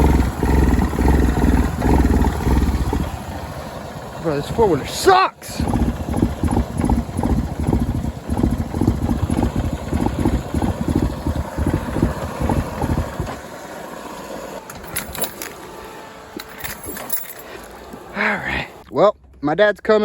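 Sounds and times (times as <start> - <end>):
atv engine revving and stalling: 0.0 - 13.4.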